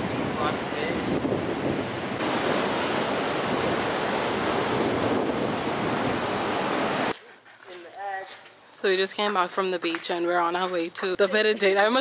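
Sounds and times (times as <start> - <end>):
surf washing on beach: 0.0 - 7.1
wind buffeting microphone: 0.0 - 7.1.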